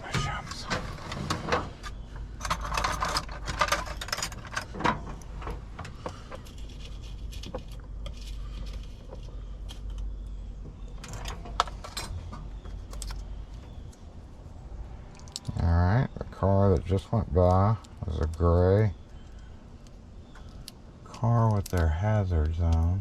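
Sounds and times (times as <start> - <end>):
low steady rumble: 0.0 - 23.0
keys and metal tools jangling: 2.4 - 4.8.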